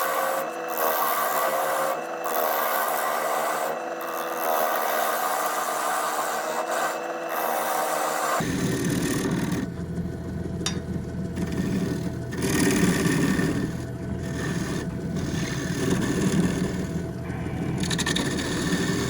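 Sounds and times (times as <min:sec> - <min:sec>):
wood lathe motor hum: 0:00.0 - 0:19.0
gouge scraping wet log: 0:11.4 - 0:17.0.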